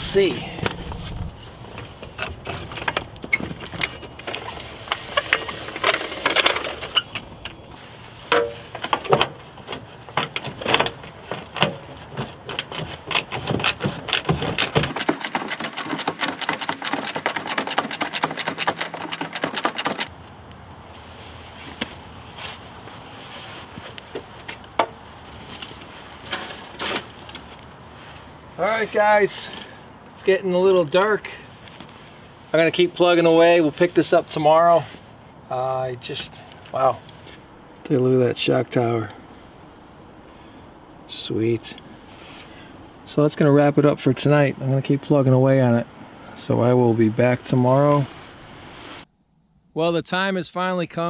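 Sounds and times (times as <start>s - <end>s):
metallic tool clanks and knocks: 8.3s - 8.9s
rapid clicking: 13.6s - 20.1s.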